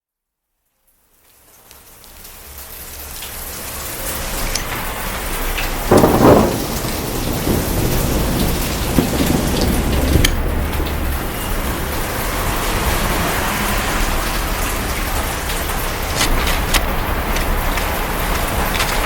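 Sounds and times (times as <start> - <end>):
heavy rain: 0.9 - 19.0
thunder: 5.7 - 19.0.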